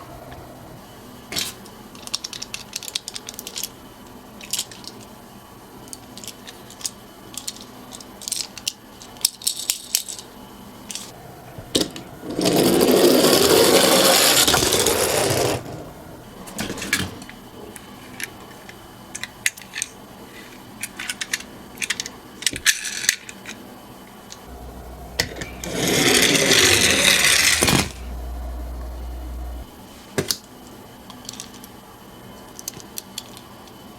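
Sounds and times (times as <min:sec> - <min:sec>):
toy cars clicking and rattling: 0:01.9 - 0:03.8, 0:04.4 - 0:05.1, 0:05.9 - 0:10.3, 0:19.1 - 0:23.6, 0:31.2 - 0:31.7, 0:32.5 - 0:33.5
toy car rolling rumble: 0:11.3 - 0:16.8, 0:24.5 - 0:29.6.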